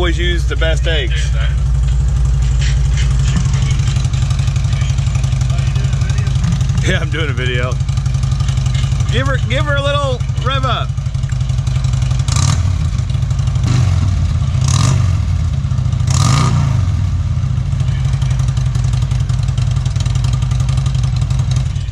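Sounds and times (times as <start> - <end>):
car engine revving: 0.0 - 21.9.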